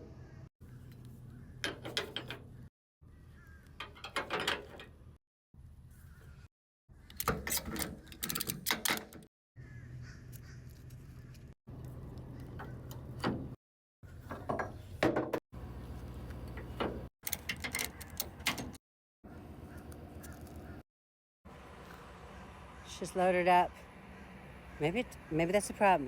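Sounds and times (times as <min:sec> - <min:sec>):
metallic clanks and rattles: 0:01.6 - 0:02.6, 0:03.8 - 0:05.0.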